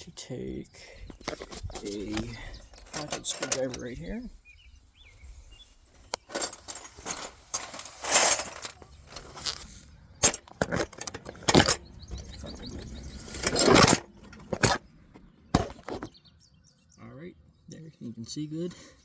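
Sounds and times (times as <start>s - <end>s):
scraping rustles: 0.9s - 4.4s, 5.0s - 16.2s
hand tool clicking on metal: 1.3s - 4.0s.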